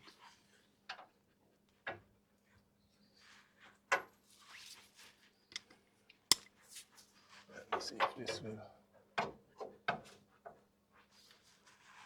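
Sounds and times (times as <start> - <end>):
metallic clicks of hand tools: 6.3 - 6.5.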